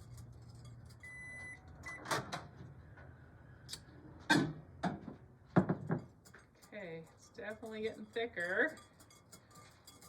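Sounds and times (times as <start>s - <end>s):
microwave beeps: 1.0s - 2.1s.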